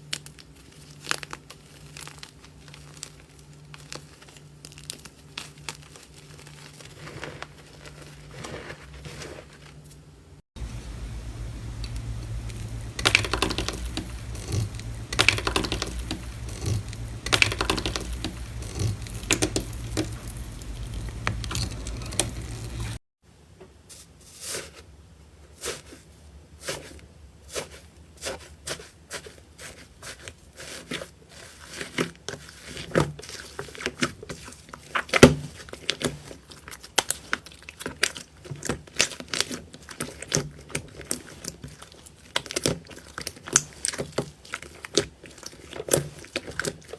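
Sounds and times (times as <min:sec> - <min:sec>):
slime worked by hand: 0:00.0 - 0:23.0, 0:27.5 - 0:46.9
low hum: 0:10.6 - 0:23.0
sharp clicks and pops: 0:10.7 - 0:23.0.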